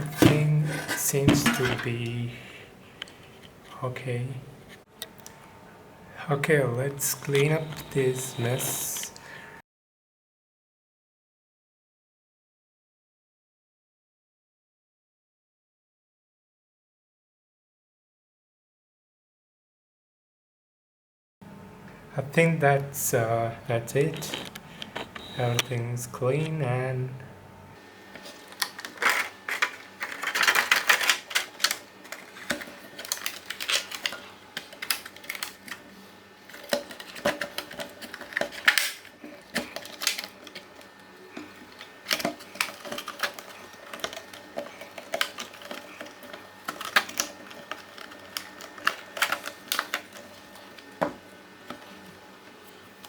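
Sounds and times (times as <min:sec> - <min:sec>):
small parts and tools clattering: 0:00.0 - 0:02.2, 0:28.2 - 0:52.0.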